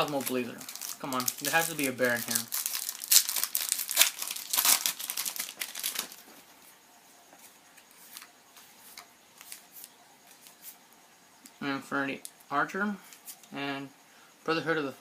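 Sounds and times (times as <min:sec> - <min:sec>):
foil wrapper tearing and crinkling: 0:00.0 - 0:06.2
cards rustling: 0:00.0 - 0:06.4, 0:07.8 - 0:10.8.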